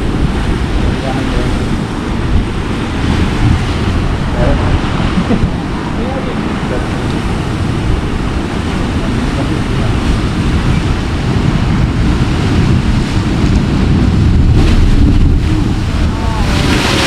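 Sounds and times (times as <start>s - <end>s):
surf washing against rocks: 0.0s - 17.0s
wind buffeting microphone: 0.0s - 17.0s.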